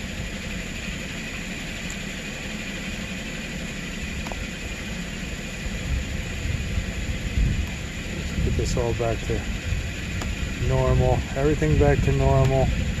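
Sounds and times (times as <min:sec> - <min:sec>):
car engine idling: 0:00.0 - 0:13.0
heavy low bumps: 0:05.6 - 0:13.0.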